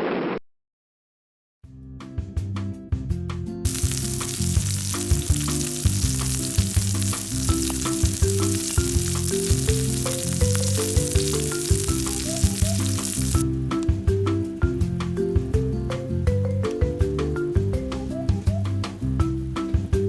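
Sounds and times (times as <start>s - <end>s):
background music: 3.4s - 20.0s
food sizzling in a pan: 3.7s - 13.4s.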